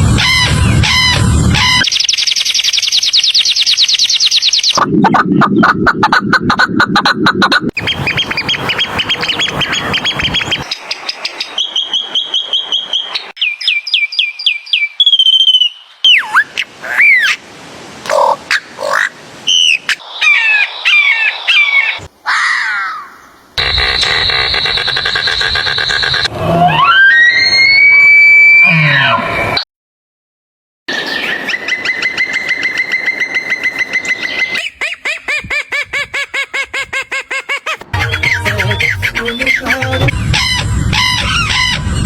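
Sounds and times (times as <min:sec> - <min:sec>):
bird calls and trills: 0:00.1 - 0:05.7, 0:07.8 - 0:17.4, 0:18.1 - 0:26.3, 0:30.9 - 0:35.7, 0:37.4 - 0:42.0.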